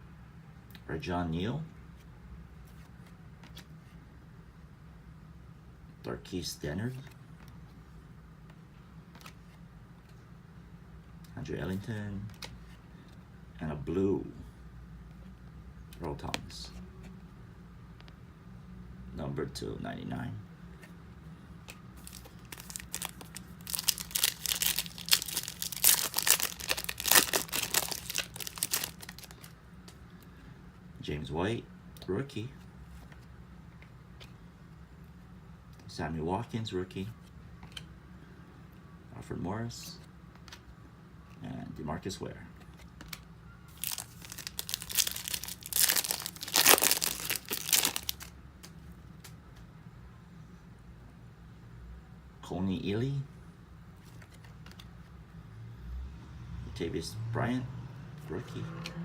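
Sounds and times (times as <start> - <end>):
foil wrapper crinkling and tearing: 22.0 - 29.5, 43.7 - 48.3.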